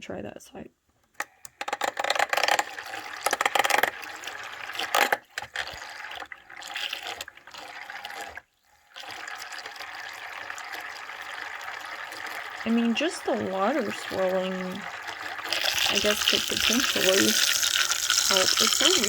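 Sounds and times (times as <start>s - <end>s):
soapy water swirling and splashing: 5.5s - 19.0s.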